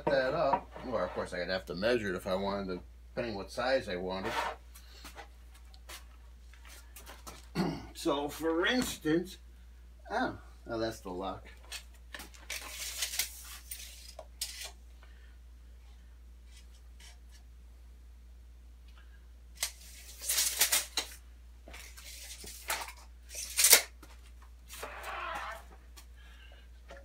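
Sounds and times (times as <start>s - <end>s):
metal parts sliding and rattling: 12.4s - 14.7s.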